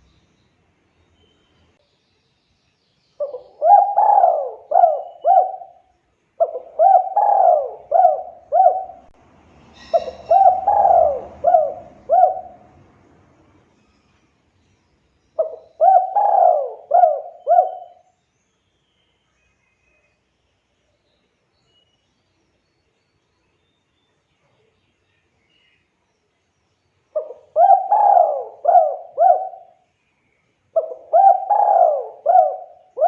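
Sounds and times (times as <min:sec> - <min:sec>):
dove cooing: 0:03.2 - 0:05.8, 0:06.4 - 0:09.1, 0:09.8 - 0:12.8, 0:15.4 - 0:18.0, 0:27.2 - 0:29.8, 0:30.8 - 0:33.0.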